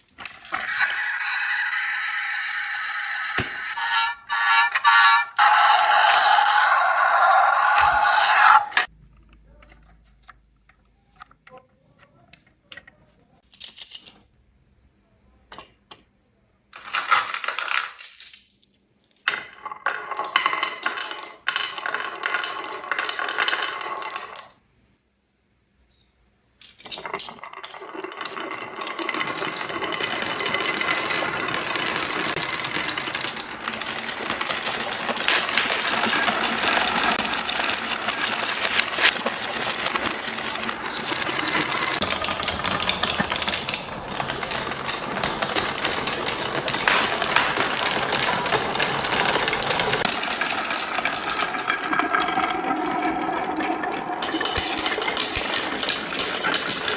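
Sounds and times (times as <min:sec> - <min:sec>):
marbles rolling on wooden run: 0:00.2 - 0:03.7, 0:19.3 - 0:24.6, 0:26.8 - 0:56.9.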